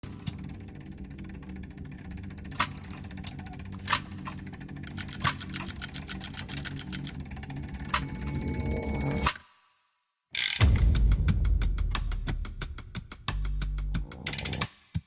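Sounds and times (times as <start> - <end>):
rapid fine ticking: 0.0 - 8.6
low mechanical hum: 0.0 - 9.0
sharp clicks: 2.4 - 8.2, 14.1 - 14.7.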